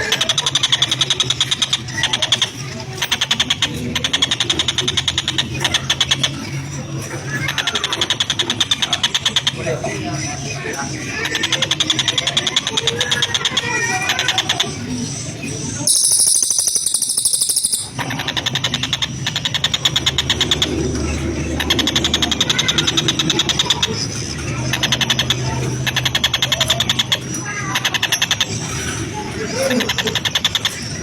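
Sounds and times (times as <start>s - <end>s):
bird rasping rattle calls: 11.2s - 29.0s
thin buzzing rattle: 15.9s - 18.1s.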